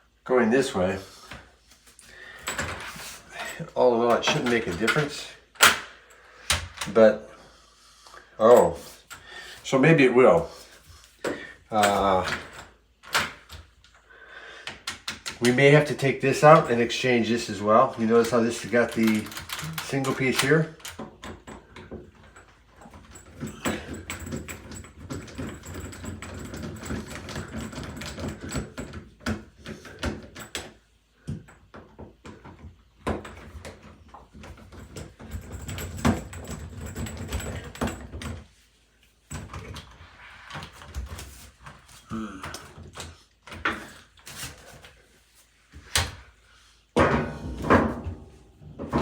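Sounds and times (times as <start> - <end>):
door knob and latch rattling: 18.2 - 31.0, 32.6 - 38.4.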